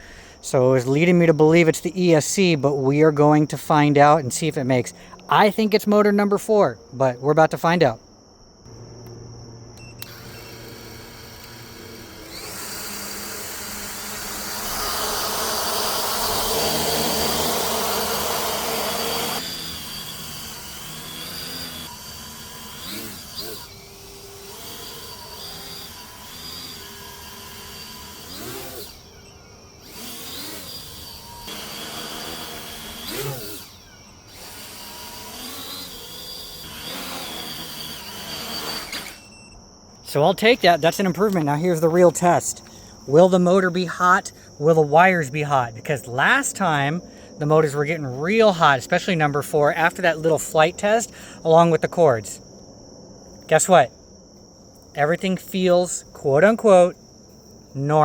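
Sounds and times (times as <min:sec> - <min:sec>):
drone motors whining: 0:08.6 - 0:51.9.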